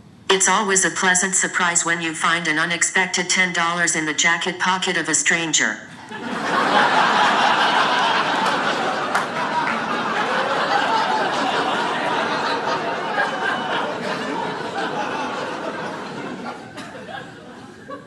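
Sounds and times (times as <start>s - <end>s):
audience laughing: 6.0s - 18.0s.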